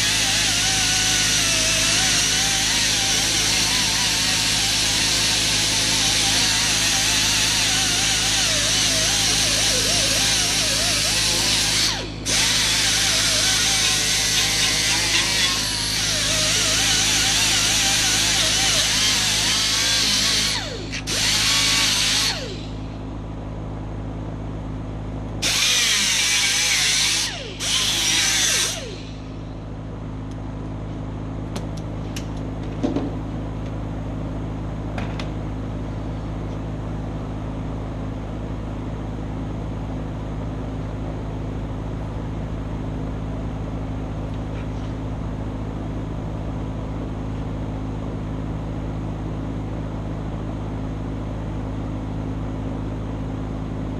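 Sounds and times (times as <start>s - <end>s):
grinder wheel grinding metal: 0.0s - 22.8s, 25.4s - 29.3s
grinder motor humming: 0.0s - 23.0s, 25.4s - 29.6s.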